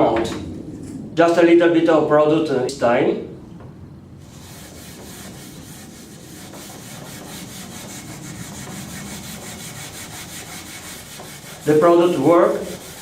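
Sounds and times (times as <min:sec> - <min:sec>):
sponge scrubbing plastic: 0:04.2 - 0:13.0.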